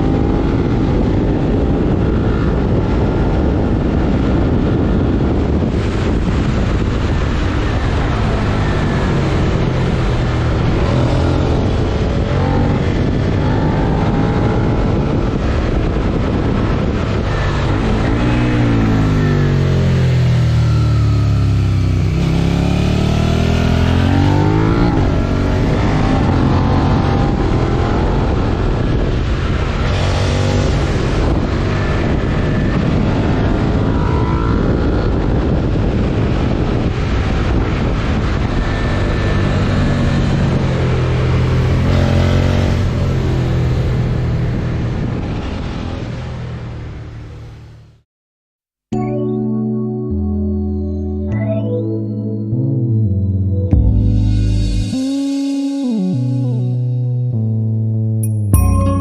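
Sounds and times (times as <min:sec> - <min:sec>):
wind noise: 0:00.0 - 0:47.2
motorcycle engine revving: 0:00.0 - 0:47.8.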